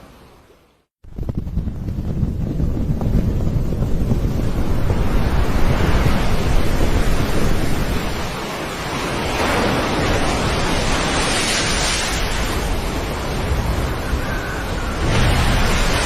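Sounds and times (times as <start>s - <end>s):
wind buffeting microphone: 1.0s - 16.0s
surf washing onto shore: 4.9s - 16.0s.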